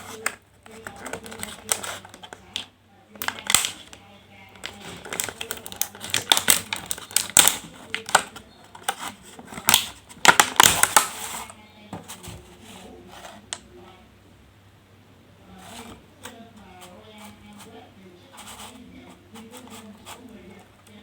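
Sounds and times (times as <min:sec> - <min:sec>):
plastic packaging crinkling: 0:00.0 - 0:13.6.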